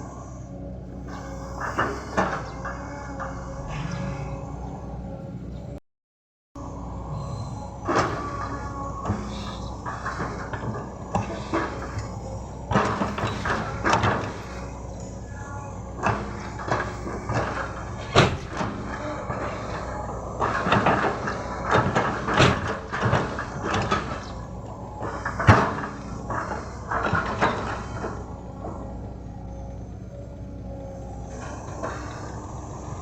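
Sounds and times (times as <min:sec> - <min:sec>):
excavator engine running: 0:00.0 - 0:05.8, 0:06.6 - 0:33.0
machine knocks and clanks: 0:07.2 - 0:29.8.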